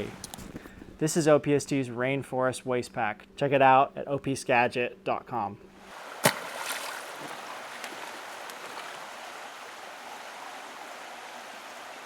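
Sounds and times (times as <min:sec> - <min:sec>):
flowing water: 0:05.8 - 0:12.0.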